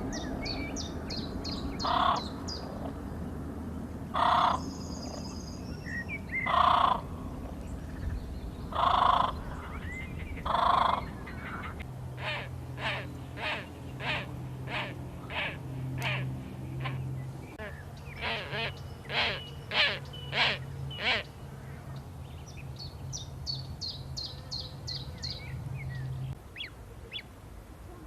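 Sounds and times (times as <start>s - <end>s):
small birds chirping: 0.0s - 3.3s, 4.2s - 27.3s
crow cawing: 1.8s - 2.2s, 4.2s - 4.6s, 8.8s - 9.4s, 10.5s - 16.2s.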